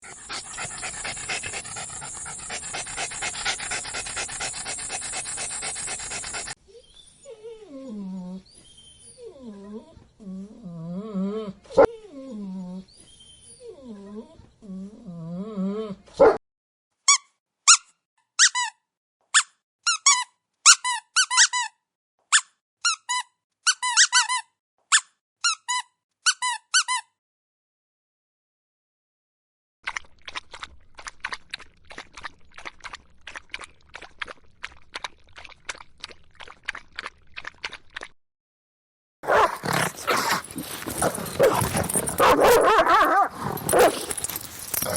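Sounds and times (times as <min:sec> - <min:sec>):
dog panting: 0:00.0 - 0:06.6, 0:39.3 - 0:44.9
high-pitched squeaks: 0:00.0 - 0:06.6, 0:39.3 - 0:44.9.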